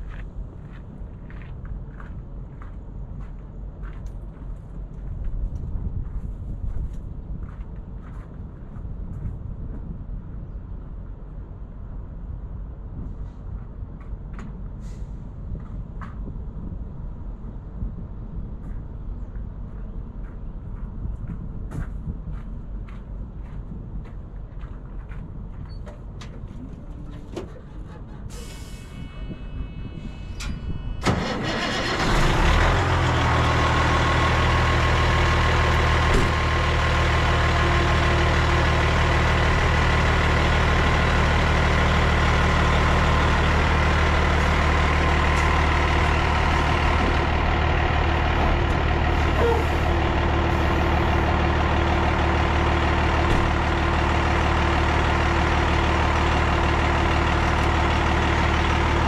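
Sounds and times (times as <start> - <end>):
truck engine starting and idling: 25.9 - 59.0.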